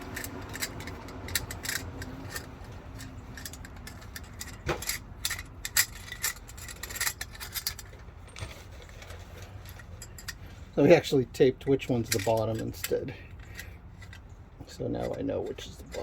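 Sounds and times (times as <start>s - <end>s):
metal parts clicking and clinking: 0.0s - 16.0s.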